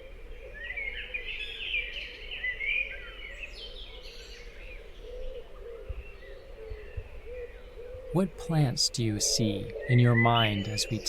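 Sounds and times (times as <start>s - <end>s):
wild birds singing and chirping: 0.0s - 11.0s
low repeated bird note: 7.8s - 11.0s.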